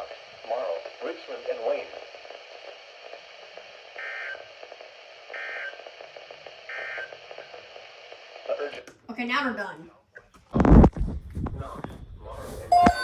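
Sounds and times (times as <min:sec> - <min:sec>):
radio hiss: 0:00.0 - 0:08.8
two-tone data burst warbles: 0:12.7 - 0:13.0.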